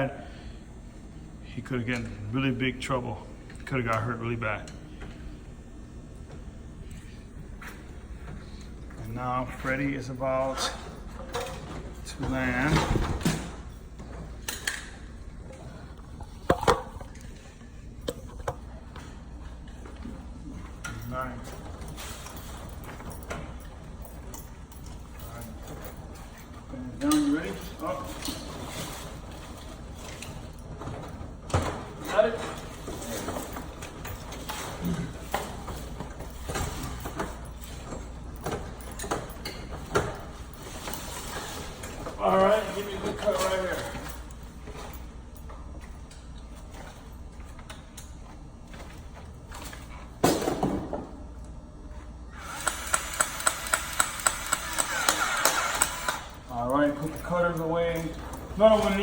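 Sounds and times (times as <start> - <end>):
steady low hum: 0.0 - 59.0
hand tools clicking on wire: 52.5 - 56.4.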